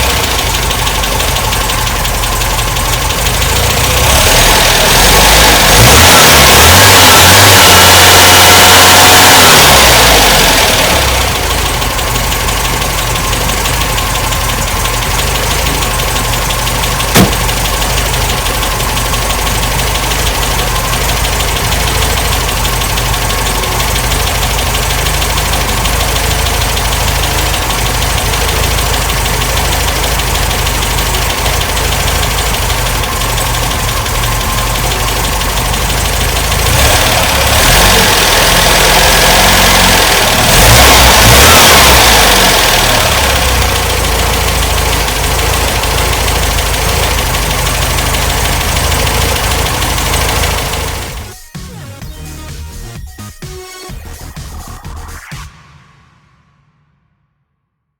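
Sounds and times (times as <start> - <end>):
engine revving: 0.0 - 51.4
lumpy car engine idling: 0.0 - 51.5
sharp click: 17.1 - 17.7.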